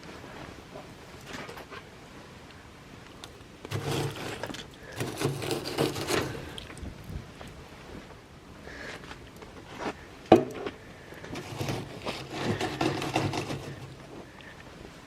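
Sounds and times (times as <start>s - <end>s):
scraping on wooden boards: 3.7s - 6.6s, 10.4s - 14.3s.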